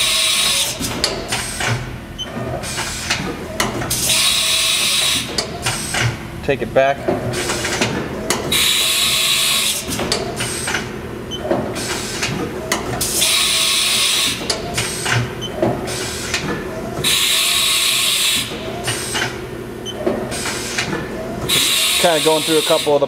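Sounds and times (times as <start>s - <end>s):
tool changer clunks and clicks: 5.3s - 6.2s, 7.0s - 8.6s, 9.8s - 13.2s, 14.3s - 17.1s
loud air hiss: 21.5s - 23.0s.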